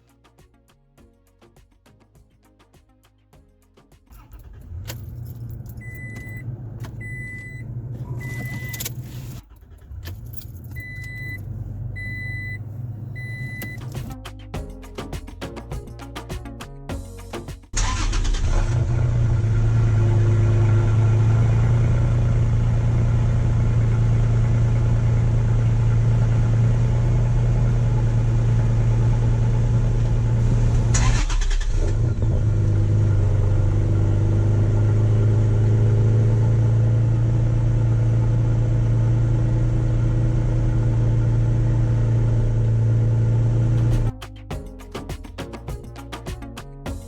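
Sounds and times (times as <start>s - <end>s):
pickup engine exhaust running: 4.2s - 14.0s, 18.4s - 31.0s, 31.8s - 44.1s
click: 8.3s - 9.1s.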